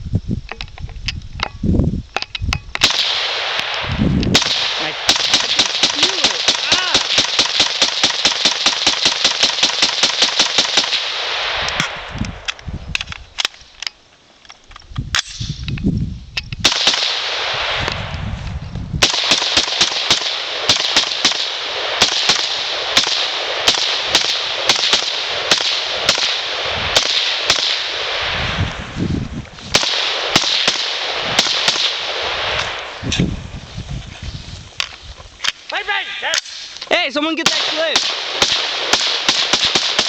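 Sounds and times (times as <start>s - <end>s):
rifle gunshots: 2.8s - 12.1s, 16.6s - 18.0s, 19.0s - 28.5s, 29.7s - 32.9s, 37.4s - 40.0s.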